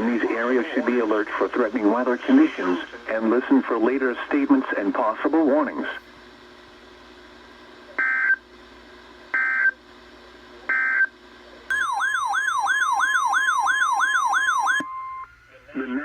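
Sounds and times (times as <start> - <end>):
warbling electronic alarm tone: 11.7 - 15.3
steady warning alarm tone: 11.7 - 15.4.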